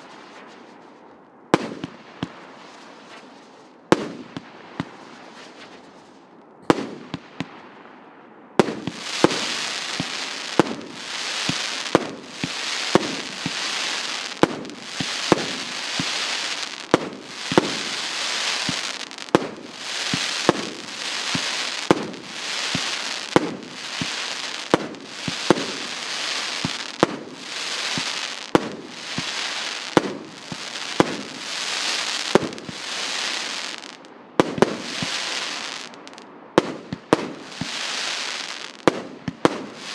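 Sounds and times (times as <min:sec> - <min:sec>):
fireworks bursts hissing and crackling: 0:01.6 - 0:06.2, 0:08.6 - 0:39.9
fireworks launch shots: 0:08.6 - 0:39.9.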